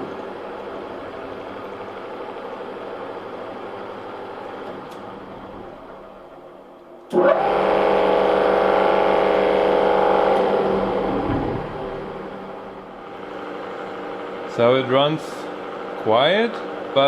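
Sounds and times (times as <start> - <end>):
machine motor humming: 0.0 - 17.0.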